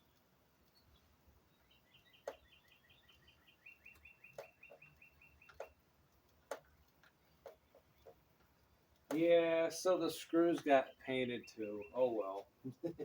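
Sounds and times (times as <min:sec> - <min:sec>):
faint songbird singing: 0:00.0 - 0:13.0
sharp clicks: 0:03.9 - 0:09.5.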